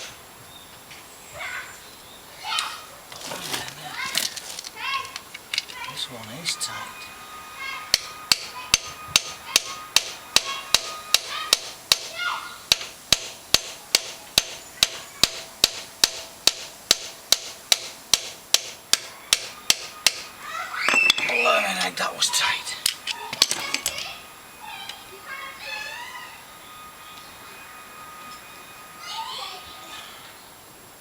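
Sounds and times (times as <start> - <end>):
light hammer taps on metal: 8.0 - 12.1, 12.7 - 21.4.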